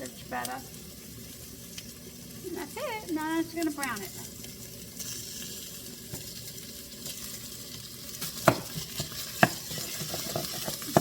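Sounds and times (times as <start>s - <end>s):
sausage meat sizzling in a frying pan: 0.0s - 11.0s.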